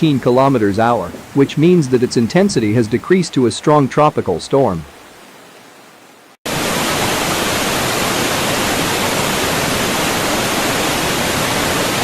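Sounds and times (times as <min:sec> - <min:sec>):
rushing storm wind and water: 0:00.0 - 0:12.0.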